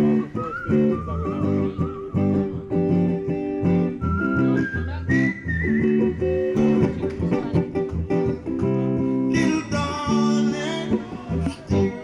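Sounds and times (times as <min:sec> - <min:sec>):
high whistled melody: 0:00.0 - 0:03.0, 0:03.8 - 0:06.8
acoustic guitar strumming: 0:00.0 - 0:12.0.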